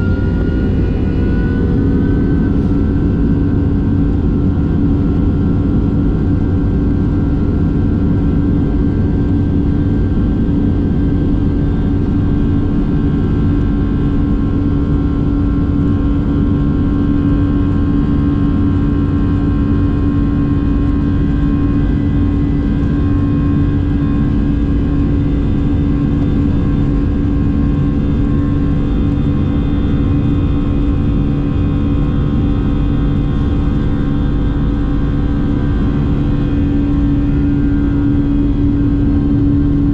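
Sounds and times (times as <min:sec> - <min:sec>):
jet engines running: 0:00.0 - 0:39.9.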